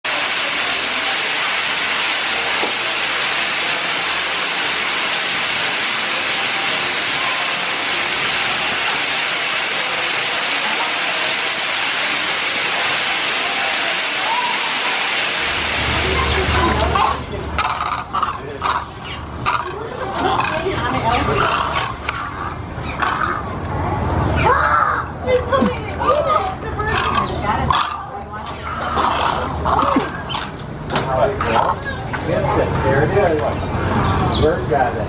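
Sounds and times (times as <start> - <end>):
loud steady hiss: 0.1 - 17.6.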